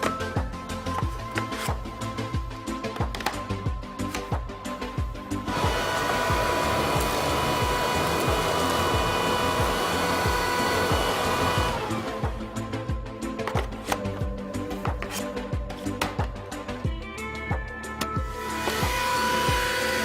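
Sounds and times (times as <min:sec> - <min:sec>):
background music with beat: 0:00.0 - 0:20.0
vacuum motor whine: 0:05.4 - 0:12.6, 0:18.3 - 0:20.0.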